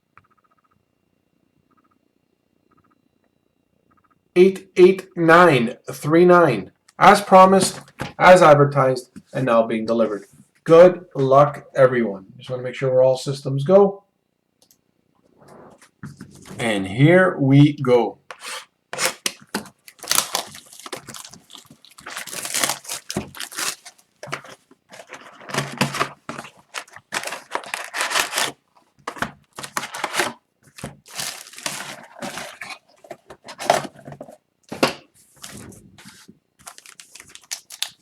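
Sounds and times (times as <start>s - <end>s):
tearing and crinkling of wrappers: 18.4s - 34.0s, 35.4s - 38.0s.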